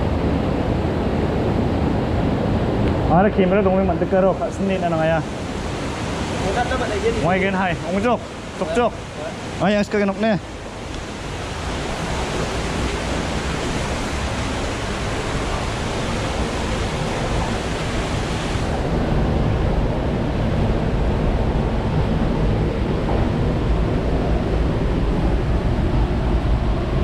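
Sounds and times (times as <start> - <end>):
waterfall rushing: 1.9 - 20.2.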